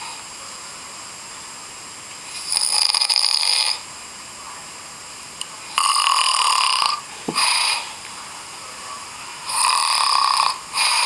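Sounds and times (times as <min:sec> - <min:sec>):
boy snoring: 0:02.3 - 0:03.8, 0:05.8 - 0:08.0, 0:09.4 - 0:11.0.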